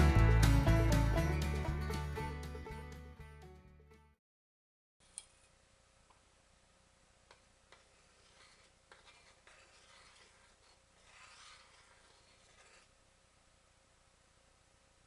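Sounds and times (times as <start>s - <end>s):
quiet rubbing or scraping: 7.8s - 13.1s.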